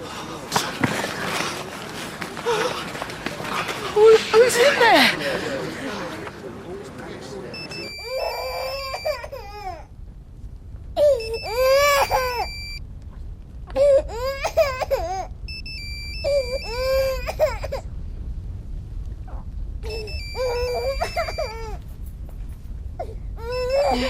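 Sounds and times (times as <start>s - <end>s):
low steady rumble: 7.5s - 24.0s
baby crying: 7.7s - 9.9s, 11.0s - 12.8s, 13.7s - 15.3s, 16.2s - 17.8s, 19.9s - 21.8s, 23.0s - 24.0s.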